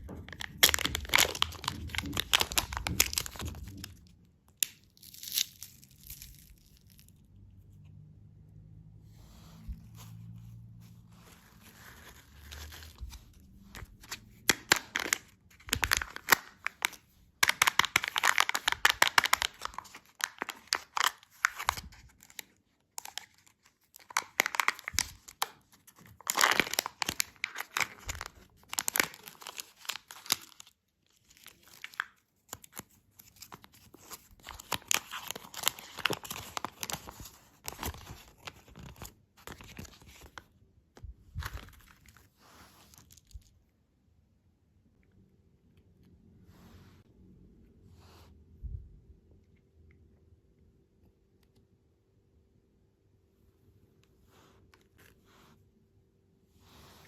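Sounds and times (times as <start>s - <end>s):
candy wrapper crinkling: 0.0s - 7.4s, 11.1s - 40.5s, 41.4s - 43.6s.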